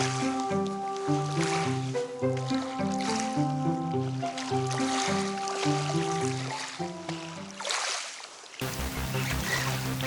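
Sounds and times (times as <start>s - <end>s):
background music: 0.0s - 7.7s, 8.6s - 10.0s
bass-heavy electronic track: 8.6s - 10.0s.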